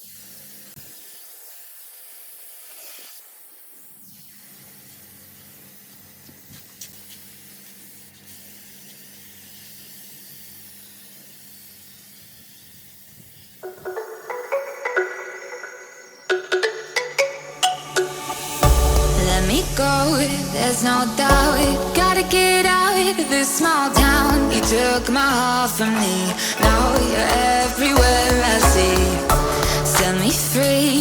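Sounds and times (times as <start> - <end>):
spray gun hissing: 7.0 - 13.6, 18.1 - 31.0
music with mallet tones: 13.6 - 20.6, 21.2 - 31.0.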